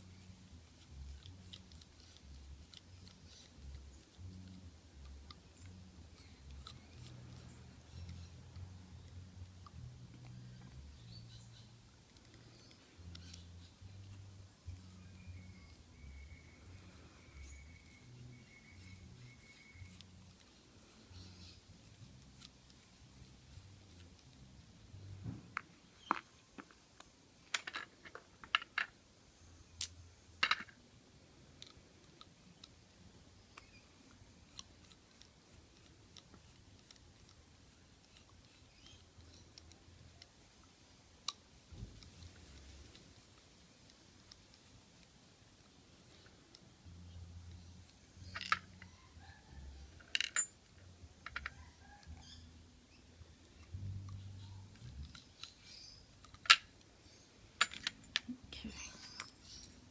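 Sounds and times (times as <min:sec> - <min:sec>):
metal parts clicking and clinking: 0:27.4 - 0:29.0, 0:48.2 - 0:48.9, 0:49.9 - 0:51.6, 0:57.5 - 0:59.8
metallic clicks of padlock parts: 0:47.4 - 0:48.9, 0:49.9 - 0:52.4, 0:53.5 - 0:59.9.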